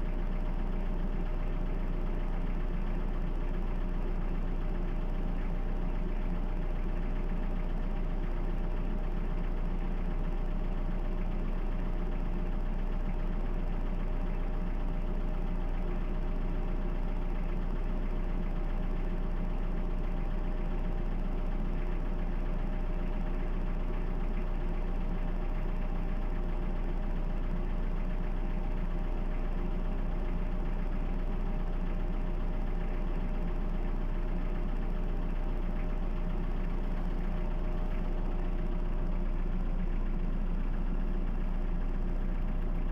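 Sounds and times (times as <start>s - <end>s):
diesel engine idling: 0.0s - 42.9s.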